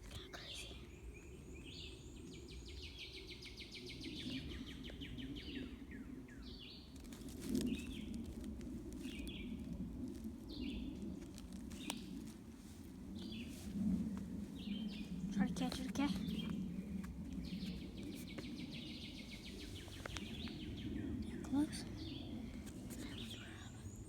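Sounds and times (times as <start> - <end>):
low rustling: 6.9 - 23.6.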